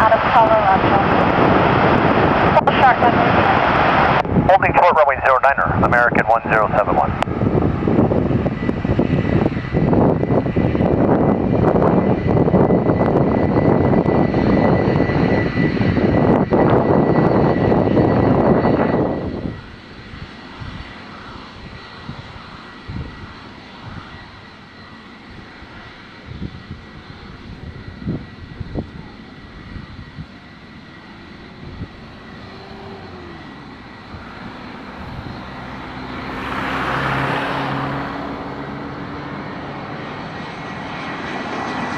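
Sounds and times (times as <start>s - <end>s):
jet airliner engines running loud: 0.0s - 41.9s
faint steady engine hum: 4.5s - 7.0s, 30.3s - 37.2s.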